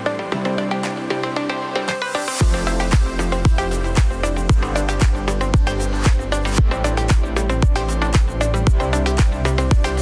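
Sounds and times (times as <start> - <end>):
electronic dance music: 0.0 - 10.0
kick drum beat: 2.4 - 10.0.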